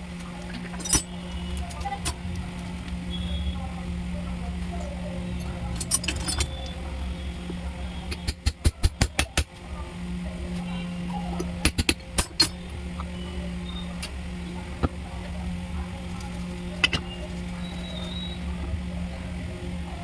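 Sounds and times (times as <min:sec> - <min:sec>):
steady low hum: 0:00.0 - 0:20.0
metal tools clicking and clinking: 0:00.5 - 0:02.2, 0:04.8 - 0:06.8, 0:11.6 - 0:12.7, 0:16.2 - 0:17.1.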